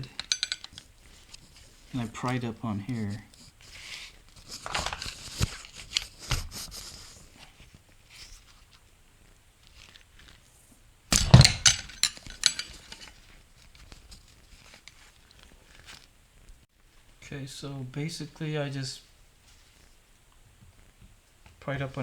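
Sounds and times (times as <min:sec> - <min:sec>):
loud clatter of metal knocks: 0:00.0 - 0:00.8, 0:11.1 - 0:13.1
metal clicks: 0:00.0 - 0:00.9, 0:11.1 - 0:13.2
screwdriver scraping metal: 0:00.0 - 0:00.9, 0:11.2 - 0:13.2.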